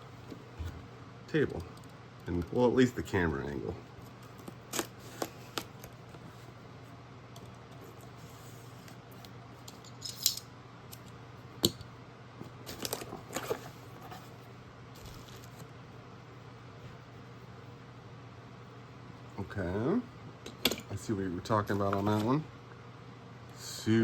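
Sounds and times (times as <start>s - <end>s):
clicks and rustling of handling: 8.8s - 14.4s.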